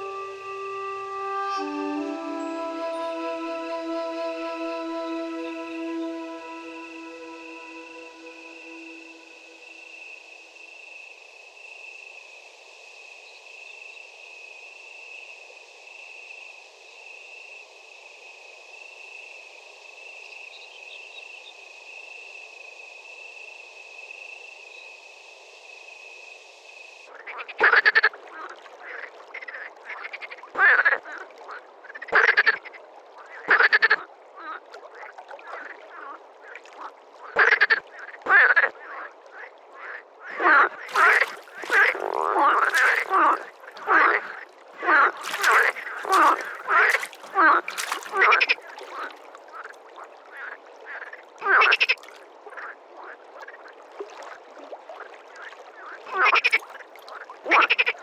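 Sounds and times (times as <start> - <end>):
high-pitched drone: 0.0 - 10.0
frog croaks: 27.1 - 53.8, 55.0 - 58.0.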